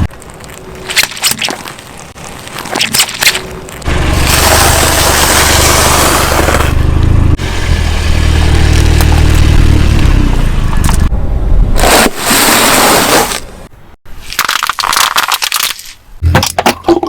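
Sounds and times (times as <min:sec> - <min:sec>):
car engine running: 0:03.4 - 0:11.1.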